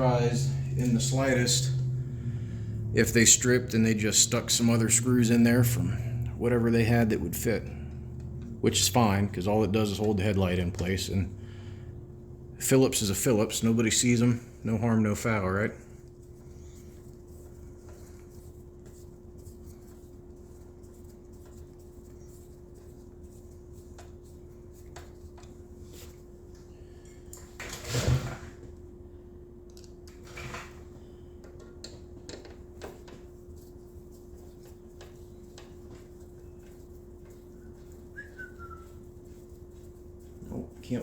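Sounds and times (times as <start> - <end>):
steady hum: 0.0 - 41.0
falling whistled note: 38.2 - 38.9.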